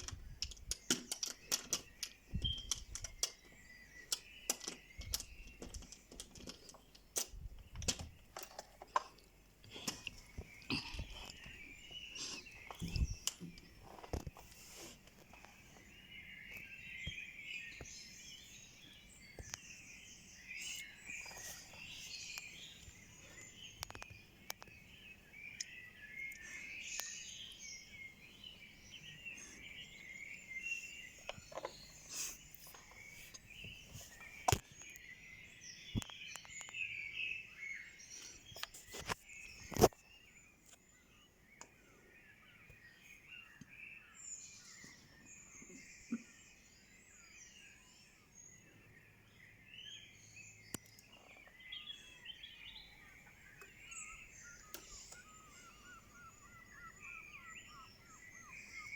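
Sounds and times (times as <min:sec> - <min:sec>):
sharp clicks: 0:00.0 - 0:11.5
songbirds singing: 0:00.0 - 0:58.9.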